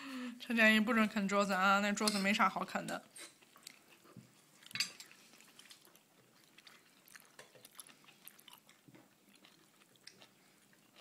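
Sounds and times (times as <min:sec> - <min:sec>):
child chewing: 0:03.0 - 0:11.0.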